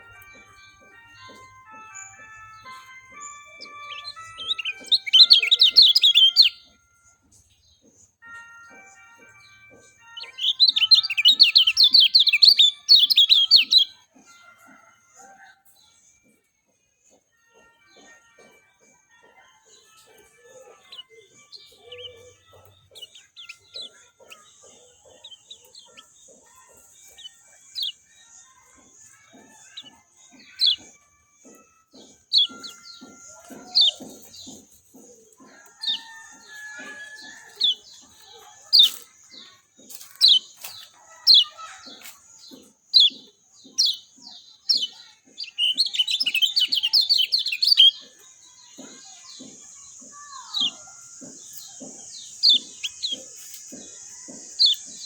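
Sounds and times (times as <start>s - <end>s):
songbird calling: 1.2s - 6.7s, 10.1s - 14.0s, 20.3s - 28.5s, 29.4s - 55.0s.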